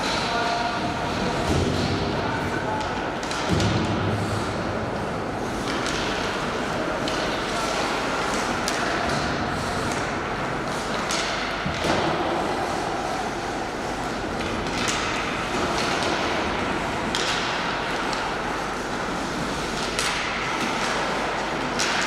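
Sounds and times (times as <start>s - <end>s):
skates scraping ice: 0.0s - 22.0s
steady noisy background: 0.0s - 22.0s
sticks and puck knocking: 5.5s - 12.4s, 14.1s - 22.0s.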